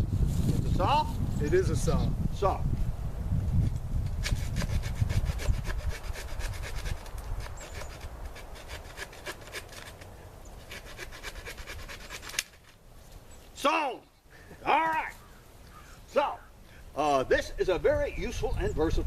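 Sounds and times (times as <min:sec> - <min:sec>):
saw blade rasping: 0:04.2 - 0:12.6.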